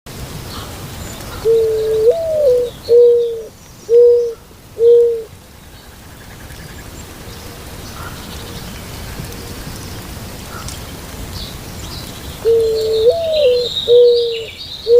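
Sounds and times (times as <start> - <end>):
dove cooing: 1.4 - 5.3, 12.4 - 14.9.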